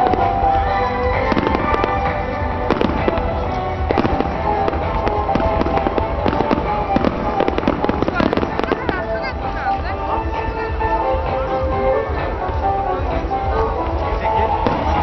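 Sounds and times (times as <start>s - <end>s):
fireworks bursting and crackling: 0.0s - 10.6s, 14.5s - 15.0s
music playing: 0.0s - 15.0s.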